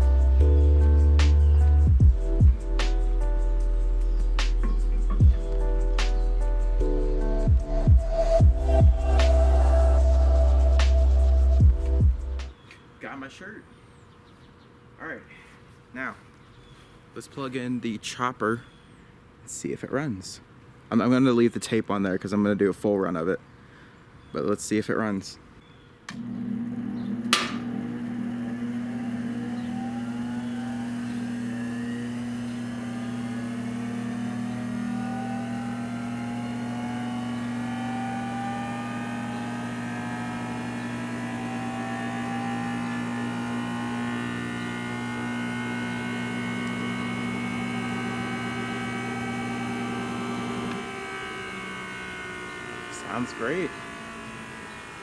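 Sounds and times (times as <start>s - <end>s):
electric motor whirring: 0.0s - 12.5s, 26.1s - 55.0s.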